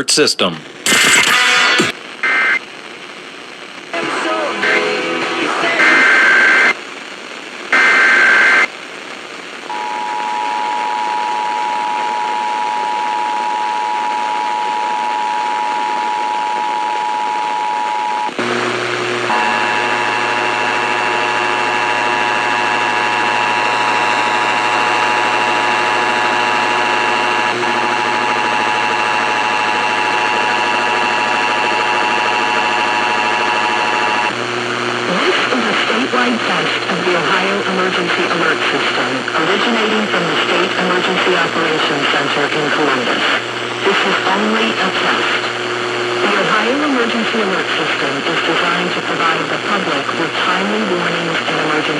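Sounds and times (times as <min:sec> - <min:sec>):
digital data tones: 0:00.9 - 0:01.9.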